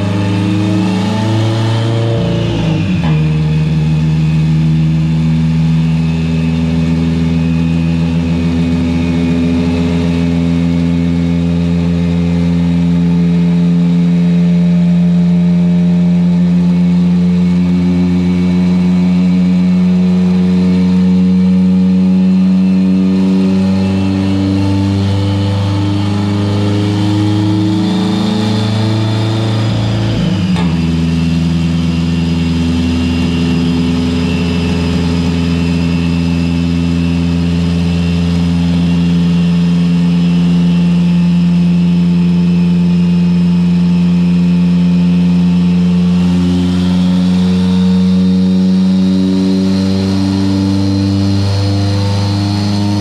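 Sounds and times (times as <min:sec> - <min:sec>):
car engine running: 0:00.0 - 0:53.0.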